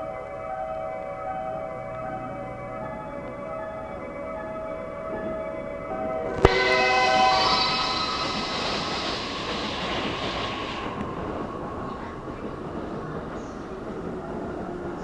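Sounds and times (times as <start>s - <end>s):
train running past: 0.0s - 15.0s
whistling tones: 0.0s - 15.0s
broad rushing noise: 6.5s - 12.8s.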